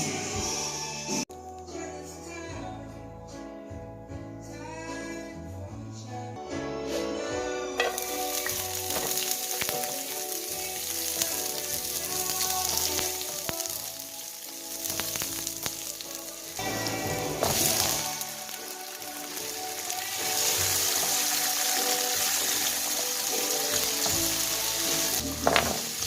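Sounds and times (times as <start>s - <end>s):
food sizzling in hot oil: 7.8s - 26.0s.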